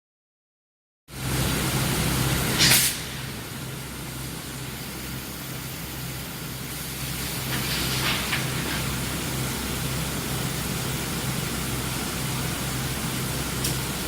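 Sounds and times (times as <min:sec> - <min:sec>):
low electrical hum: 0:01.1 - 0:14.0
constant hiss: 0:01.3 - 0:14.0
short loud hiss: 0:02.5 - 0:03.4.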